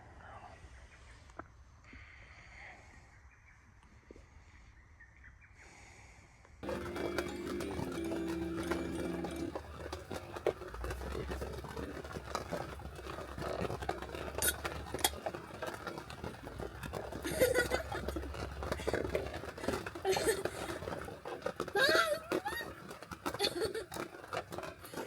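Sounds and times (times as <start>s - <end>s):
laughter: 17.2s - 18.3s, 23.3s - 24.0s.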